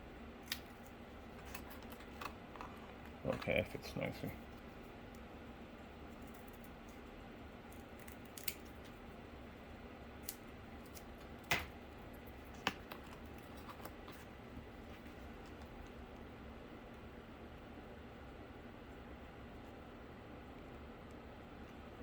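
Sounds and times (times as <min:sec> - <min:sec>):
clicks and taps handling cardboard: 0:12.5 - 0:14.3.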